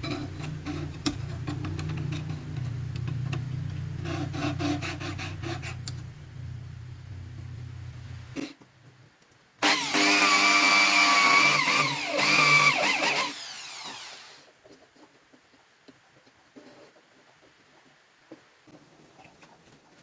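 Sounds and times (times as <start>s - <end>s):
bench grinder whining: 9.6s - 14.4s.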